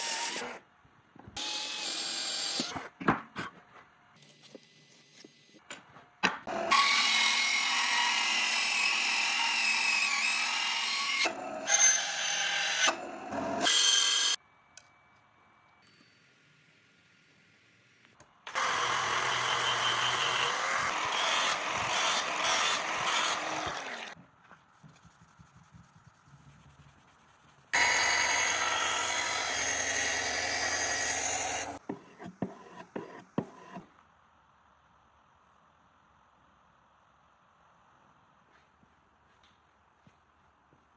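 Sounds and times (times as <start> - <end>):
power tool running: 18.5 - 24.2, 27.8 - 31.8.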